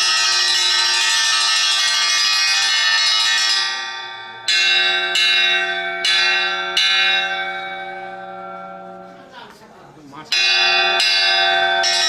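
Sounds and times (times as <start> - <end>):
railway station bell ringing: 0.0 - 12.0.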